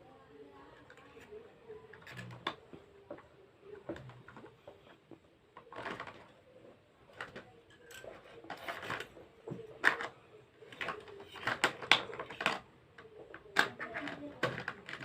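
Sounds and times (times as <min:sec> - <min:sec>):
hands handling plastic toy car: 0:03.8 - 0:15.0.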